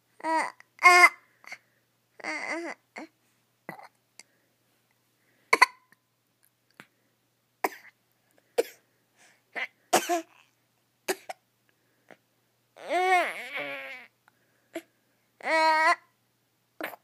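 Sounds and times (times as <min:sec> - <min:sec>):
baby vocal sounds: 0:02.2 - 0:04.0, 0:12.8 - 0:14.1, 0:16.8 - 0:17.0
baby coughing: 0:03.7 - 0:04.0, 0:05.5 - 0:05.9, 0:07.6 - 0:08.0, 0:08.6 - 0:08.8, 0:09.6 - 0:10.4, 0:11.1 - 0:11.4, 0:16.8 - 0:17.0.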